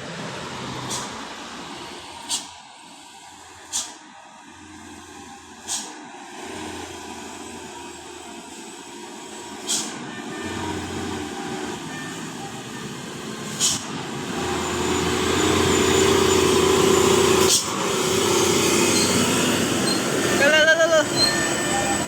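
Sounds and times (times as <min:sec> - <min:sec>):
bus diesel engine running: 0:00.0 - 0:22.0
air brake hiss: 0:00.8 - 0:01.2, 0:02.2 - 0:02.6, 0:03.6 - 0:04.1, 0:05.6 - 0:06.0, 0:09.6 - 0:10.0, 0:13.5 - 0:14.0.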